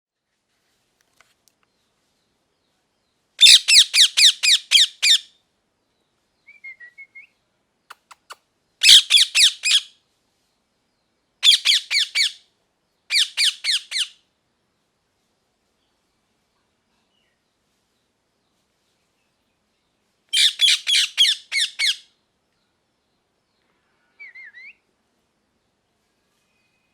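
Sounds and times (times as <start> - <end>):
soft chirps: 6.5 - 9.5
parakeet squawking: 7.9 - 9.8, 13.1 - 14.1, 20.4 - 22.0.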